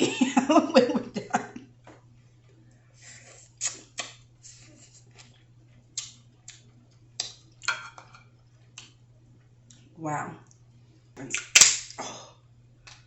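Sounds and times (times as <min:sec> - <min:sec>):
crab shells cracking: 0:11.4 - 0:12.0.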